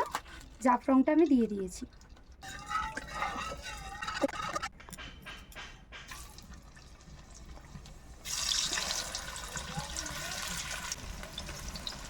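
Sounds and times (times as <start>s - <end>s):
potatoes sizzling in oil: 8.0s - 12.0s.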